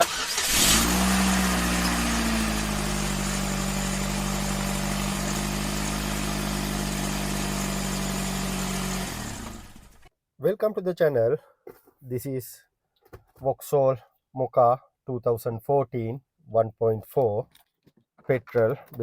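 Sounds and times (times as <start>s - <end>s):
car engine idling: 0.0s - 10.1s.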